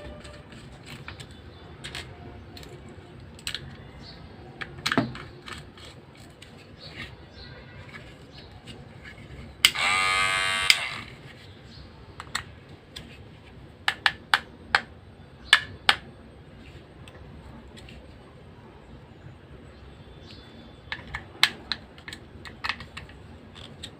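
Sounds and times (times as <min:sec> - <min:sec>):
hair trimmer motor whine: 0:09.7 - 0:11.2.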